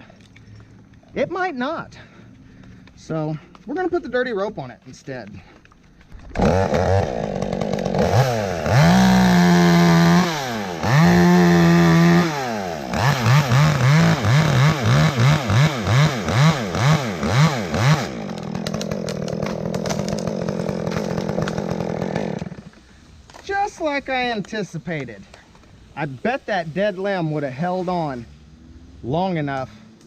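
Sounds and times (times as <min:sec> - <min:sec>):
chainsaw cutting and revving: 0:06.1 - 0:22.9.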